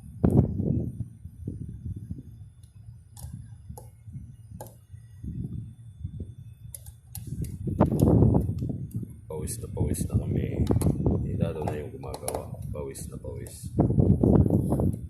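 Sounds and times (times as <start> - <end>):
low handling rumble: 7.2 - 15.0.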